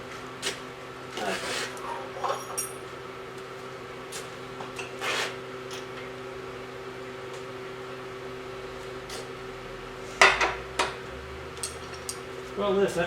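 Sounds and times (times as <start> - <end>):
electric machine hum: 5.4 - 13.0.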